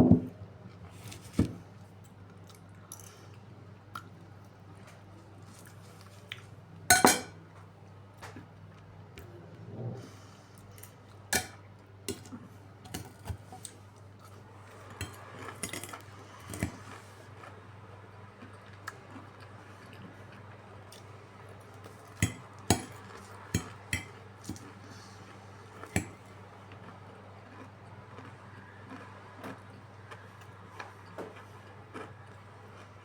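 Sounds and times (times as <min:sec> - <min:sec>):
cutlery clinking against dishes: 0:06.9 - 0:07.4, 0:10.8 - 0:12.2, 0:15.0 - 0:16.8, 0:22.2 - 0:24.6.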